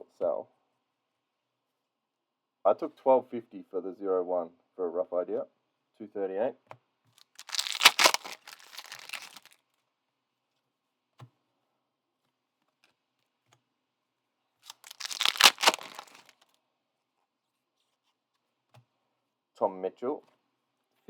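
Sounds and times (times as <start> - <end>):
plastic wrapper tearing and crinkling: 7.3 - 9.5, 14.7 - 16.3.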